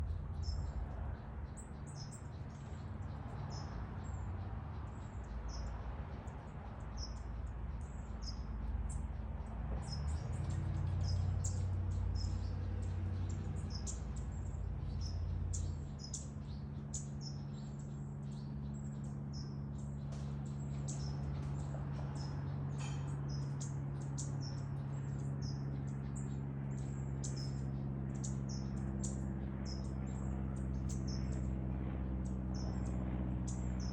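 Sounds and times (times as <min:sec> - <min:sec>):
small birds chirping: 0:00.0 - 0:33.9.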